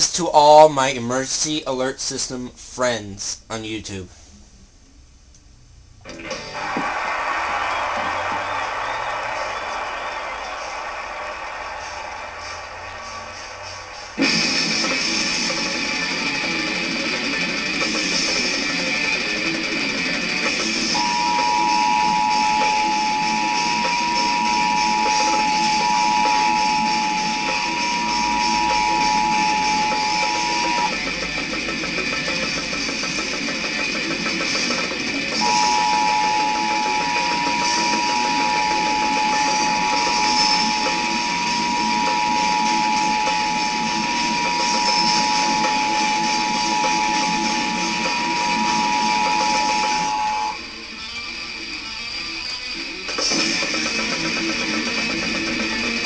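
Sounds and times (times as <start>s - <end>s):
rock music with guitar and drums: 6.1s - 56.0s
two-tone alert signal: 20.9s - 31.0s, 35.4s - 50.6s.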